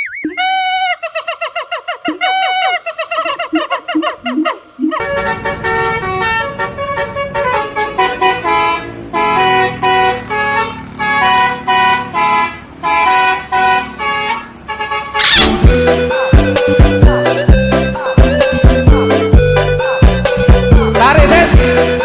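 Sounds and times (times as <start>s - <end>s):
bus air horn tooting a melody: 0.3s - 1.0s, 5.0s - 19.9s.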